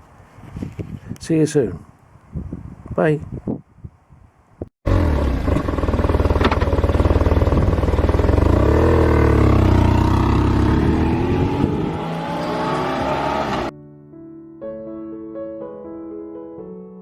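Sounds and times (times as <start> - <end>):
motorcycle engine revving: 4.9 - 13.7.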